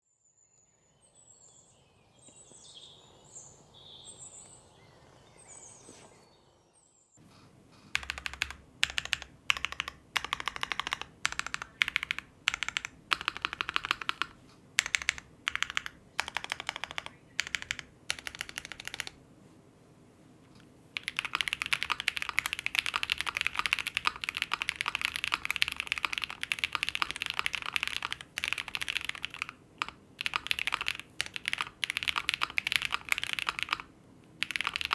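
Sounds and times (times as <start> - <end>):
mechanical keyboard typing: 7.3 - 19.2, 21.0 - 34.9.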